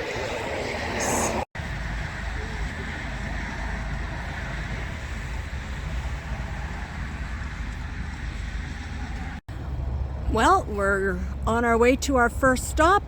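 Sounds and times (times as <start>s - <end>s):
vehicle engine and road noise: 0.0s - 13.0s.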